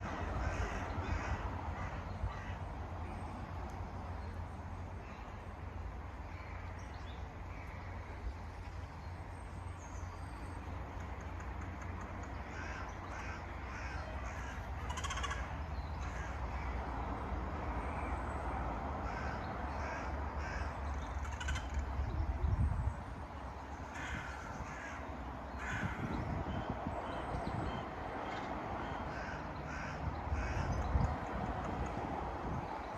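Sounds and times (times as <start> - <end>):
crows cawing: 0.3 - 2.7, 11.8 - 16.8, 19.0 - 21.9, 23.8 - 26.2, 28.2 - 30.9.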